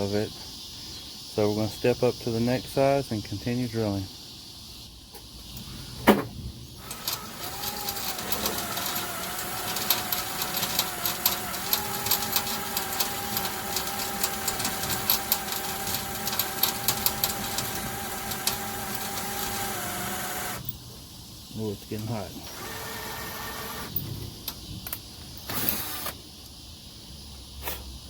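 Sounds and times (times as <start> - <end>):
drill bit ticking on metal: 6.8 - 20.7, 22.4 - 24.0
electric drill whining: 6.8 - 20.7, 22.4 - 24.0, 25.4 - 26.2.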